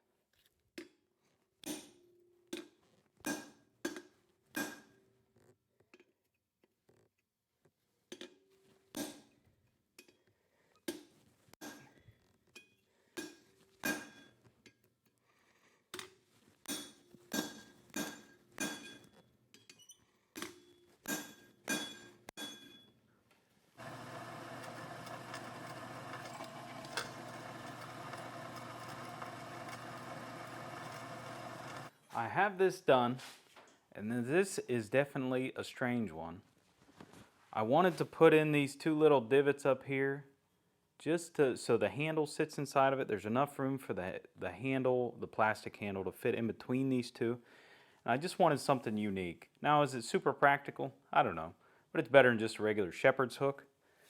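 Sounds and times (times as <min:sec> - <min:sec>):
machine noise with low hum: 0:23.8 - 0:31.9.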